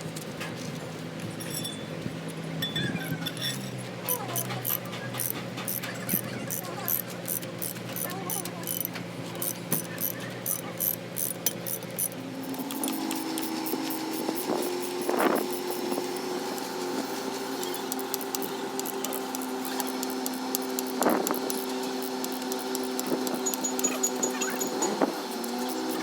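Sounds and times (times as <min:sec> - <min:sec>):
workshop machine humming: 0:00.0 - 0:26.0
metal tools clinking: 0:01.4 - 0:02.0, 0:02.6 - 0:07.0, 0:17.6 - 0:26.0.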